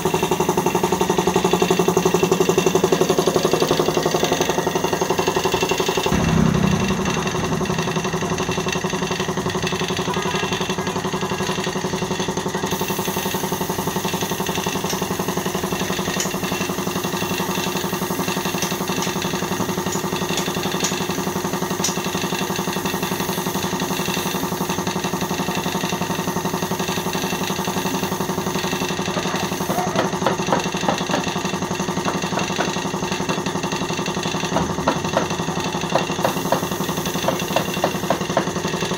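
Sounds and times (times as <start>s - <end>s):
spray-painting gun hissing: 12.7s - 14.8s, 36.1s - 38.2s.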